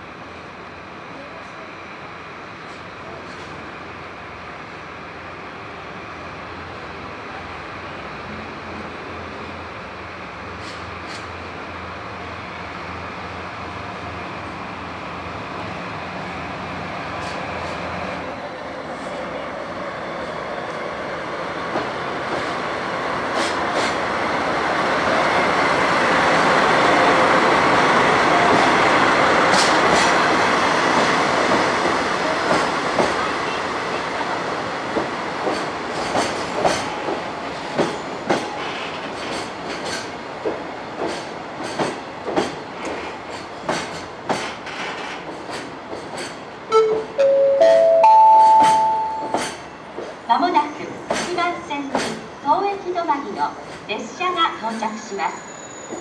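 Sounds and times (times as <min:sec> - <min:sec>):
train rolling past: 0:00.0 - 0:56.0
wheels clacking over rail joints: 0:35.0 - 0:46.5
rising station chime: 0:46.7 - 0:49.4.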